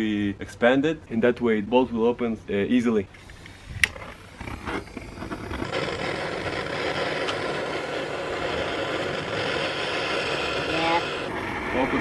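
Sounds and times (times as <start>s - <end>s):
heating tool hissing: 3.2s - 11.4s.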